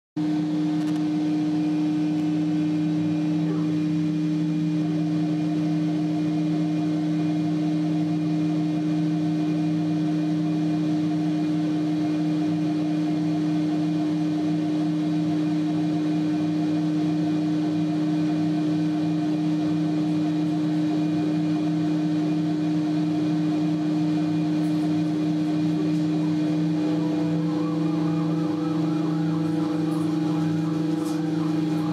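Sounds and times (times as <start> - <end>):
wood router spindle humming: 24.1 - 31.9.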